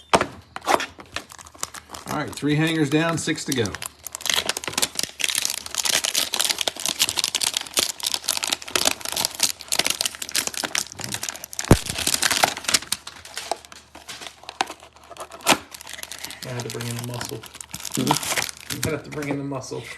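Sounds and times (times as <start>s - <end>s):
cardboard and plastic crinkling: 0.0s - 19.5s.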